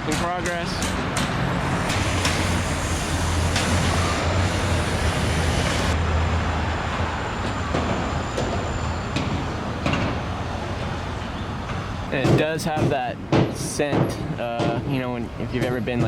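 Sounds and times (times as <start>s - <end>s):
tyre and road noise: 0.0s - 16.0s
engine hum: 1.0s - 7.6s.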